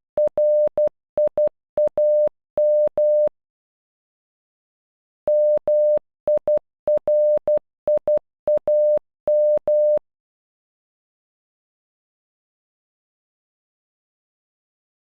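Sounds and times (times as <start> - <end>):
morse code beeps: 0.2 - 3.3, 5.3 - 10.0.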